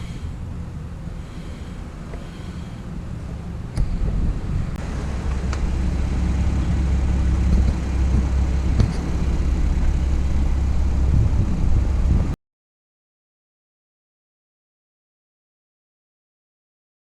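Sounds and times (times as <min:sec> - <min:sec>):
low road rumble: 0:00.0 - 0:12.4.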